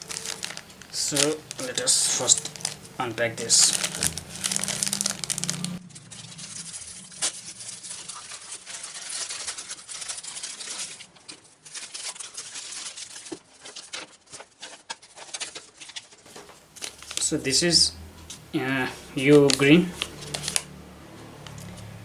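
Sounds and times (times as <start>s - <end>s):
wrapping crinkling and tearing: 0.0s - 5.8s, 7.3s - 22.0s.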